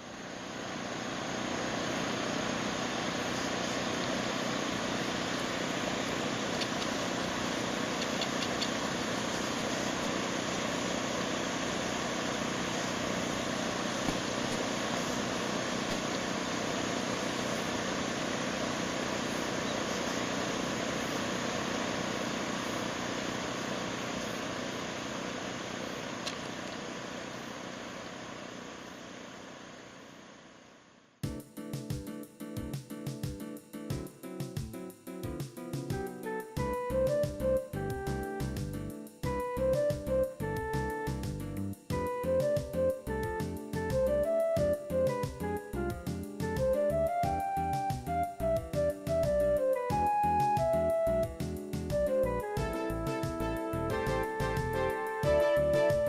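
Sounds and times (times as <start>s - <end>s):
excavator diesel engine running: 0.0s - 30.0s, 35.9s - 56.0s.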